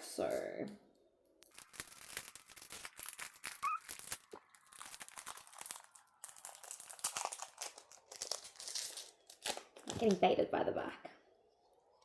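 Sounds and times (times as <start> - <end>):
wrapper crinkling and tearing: 1.4 - 10.2.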